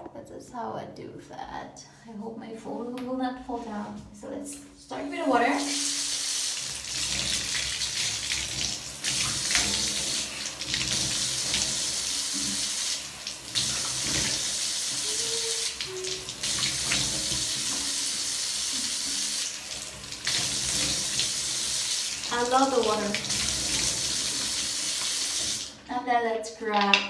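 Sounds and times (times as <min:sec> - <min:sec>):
water running from tap into sink: 0:05.1 - 0:25.8.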